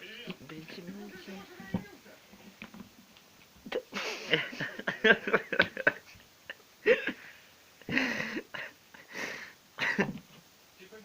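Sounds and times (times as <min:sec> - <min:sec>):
person laughing breathily: 0:03.7 - 0:06.2, 0:06.8 - 0:10.2.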